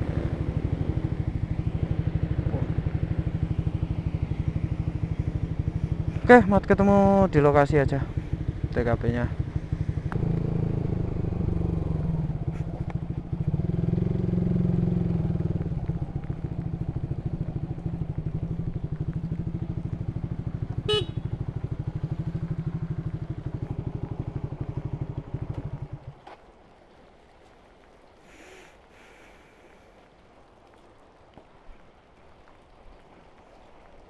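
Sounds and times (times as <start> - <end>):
motorcycle engine running: 0.0 - 26.2.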